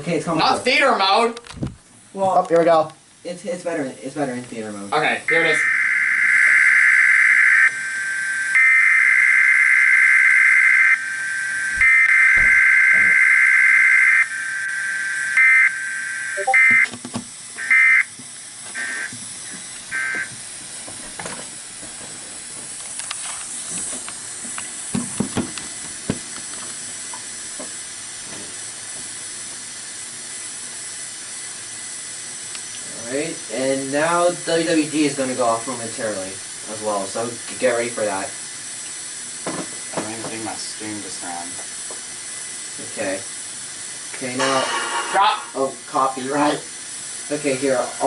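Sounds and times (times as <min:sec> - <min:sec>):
raspy digital data bursts: 0:04.8 - 0:16.9, 0:17.6 - 0:18.1, 0:18.8 - 0:19.1, 0:19.9 - 0:20.3.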